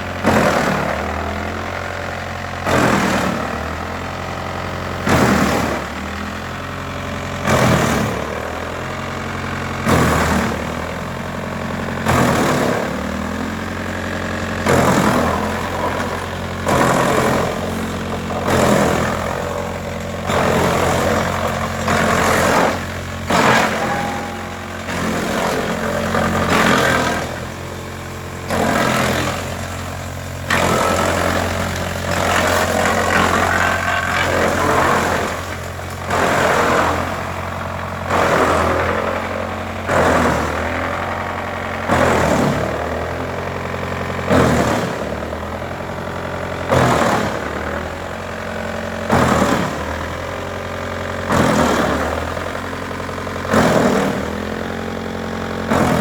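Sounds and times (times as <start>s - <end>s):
wood chipper hum: 0.0s - 56.0s
wood chipping surges: 12.1s - 45.4s.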